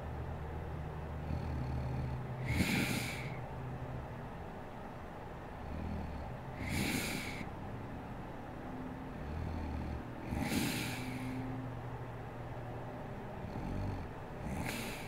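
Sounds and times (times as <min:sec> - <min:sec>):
woman snoring: 0:01.2 - 0:03.4, 0:05.6 - 0:07.5, 0:09.1 - 0:11.5, 0:13.4 - 0:15.0.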